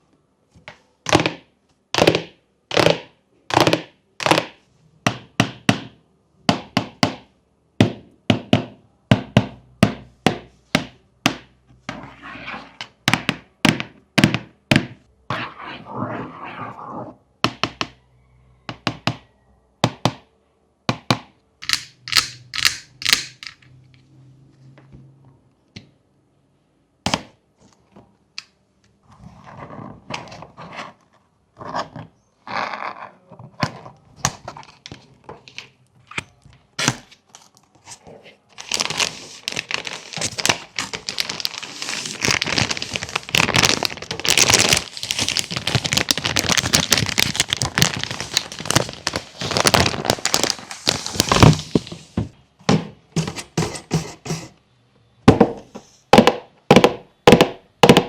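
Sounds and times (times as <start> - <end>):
rustling or scraping: 11.8 - 12.9, 15.3 - 17.2, 37.2 - 52.4, 53.2 - 54.6.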